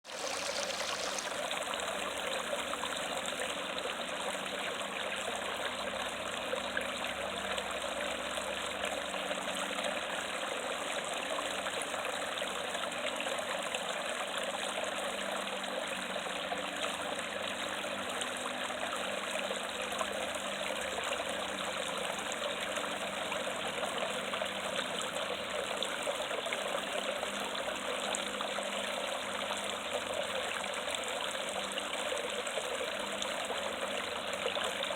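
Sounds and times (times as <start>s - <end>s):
waterfall splashing over rocks: 0.0s - 1.5s.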